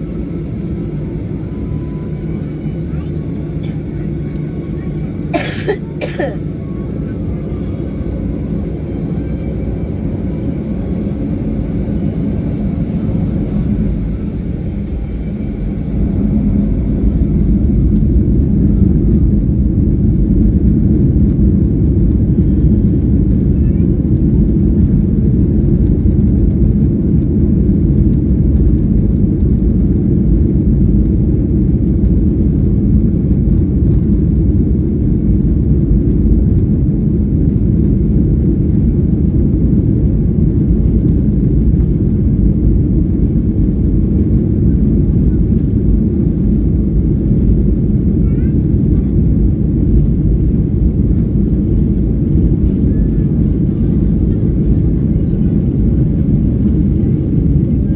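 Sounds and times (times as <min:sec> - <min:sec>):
jet engines roaring on takeoff: 0:00.0 - 0:57.9.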